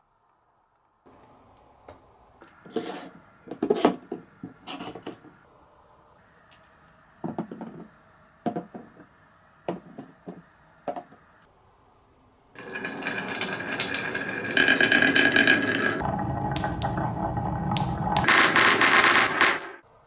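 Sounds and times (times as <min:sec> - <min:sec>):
marbles clicking on wooden track: 0:12.6 - 0:16.0, 0:18.2 - 0:19.8
marbles rattling clatter: 0:12.6 - 0:16.0.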